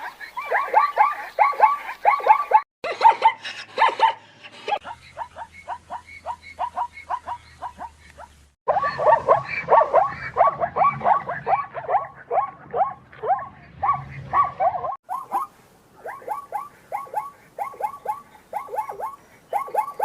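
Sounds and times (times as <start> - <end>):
zebra barking: 4.9 - 20.0.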